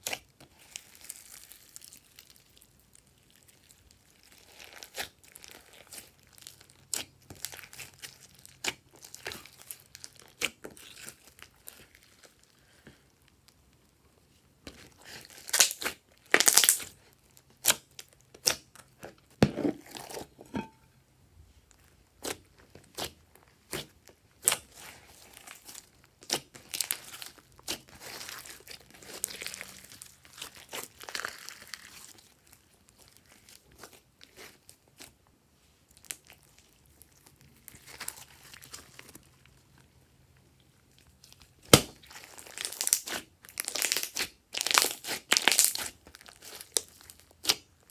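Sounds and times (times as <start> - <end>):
slime squished by hand: 0.0 - 12.4, 14.7 - 17.0, 22.2 - 35.1, 41.2 - 47.6.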